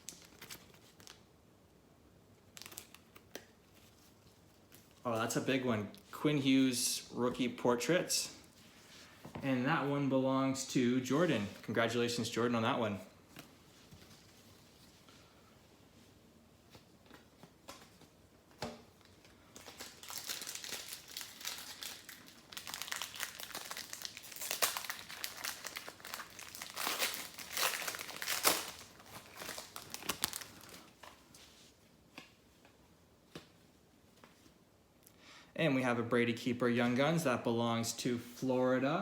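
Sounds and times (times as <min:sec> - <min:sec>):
foil wrapper tearing and crinkling: 0:02.5 - 0:03.5, 0:19.6 - 0:31.2.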